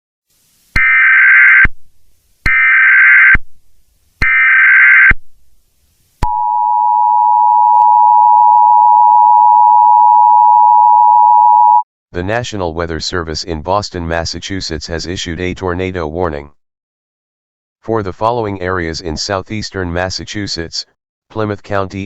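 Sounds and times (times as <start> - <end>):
data burst tones: 0.8 - 1.8, 2.5 - 3.4
two-tone attention signal: 6.2 - 11.8.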